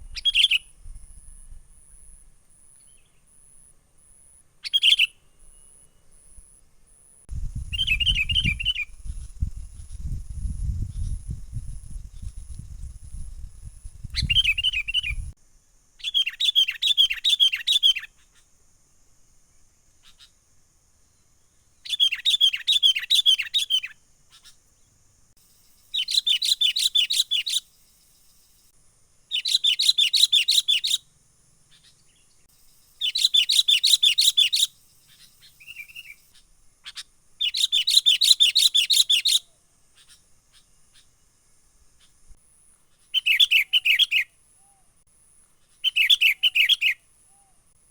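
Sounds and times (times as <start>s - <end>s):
bird rapid chattering calls: 33.0s - 39.4s.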